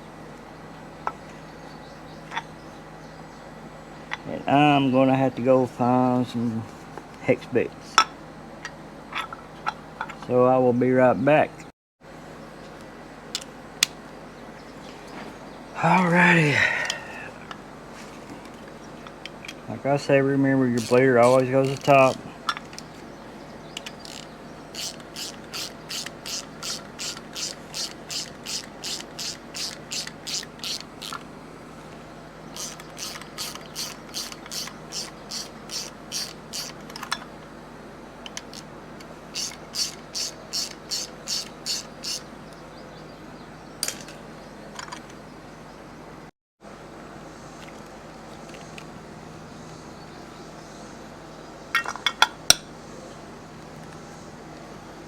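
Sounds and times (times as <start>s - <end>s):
steady low hum: 0.0s - 55.0s
hand ratchet clicking: 20.8s - 22.2s, 23.8s - 31.2s, 32.6s - 36.8s, 39.4s - 42.2s.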